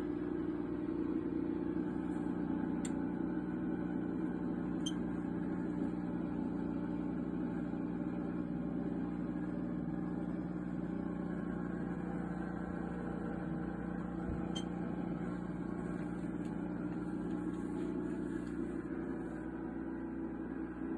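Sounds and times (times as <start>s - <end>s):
incubator fan humming: 0.0s - 20.9s
faint click: 2.8s - 3.0s.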